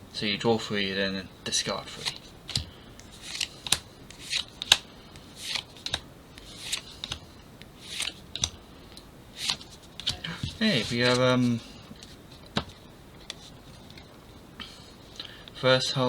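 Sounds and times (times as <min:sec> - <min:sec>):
trading cards sliding and flicking: 0:01.9 - 0:14.0.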